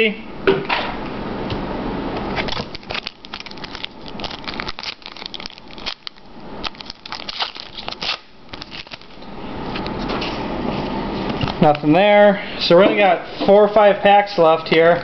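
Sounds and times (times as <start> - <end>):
cards being handled: 2.4 - 9.2
wrapper crinkling and tearing: 2.4 - 9.2.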